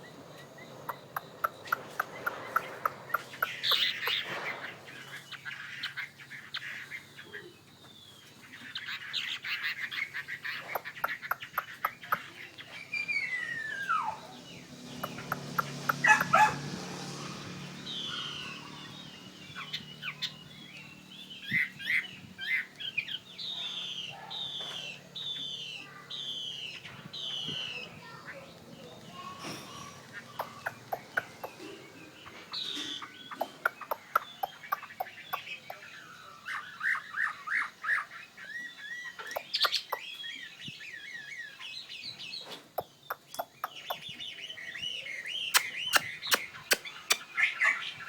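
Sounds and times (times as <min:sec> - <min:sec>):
bird sharp clicks: 0:00.8 - 0:04.8, 0:10.5 - 0:12.6, 0:14.9 - 0:16.6, 0:29.1 - 0:35.8, 0:39.2 - 0:40.1, 0:42.5 - 0:44.2, 0:45.4 - 0:47.5
bird singing with whistles: 0:10.8 - 0:16.5, 0:42.8 - 0:48.0.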